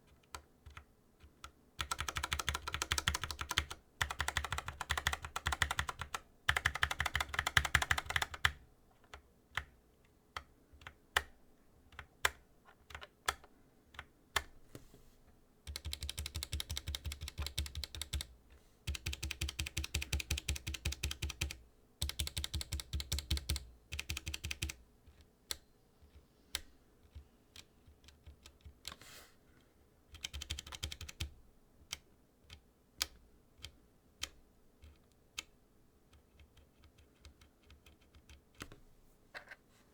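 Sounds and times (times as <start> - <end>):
mechanical keyboard typing: 1.8 - 9.7, 15.7 - 18.3, 18.9 - 24.8, 30.1 - 31.3.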